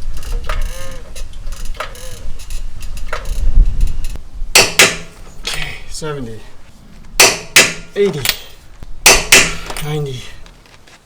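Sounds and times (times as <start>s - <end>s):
torque wrench clicking: 0.0s - 5.6s
handling noise: 0.0s - 11.0s
loud metal click: 0.1s - 5.7s, 7.2s - 9.9s.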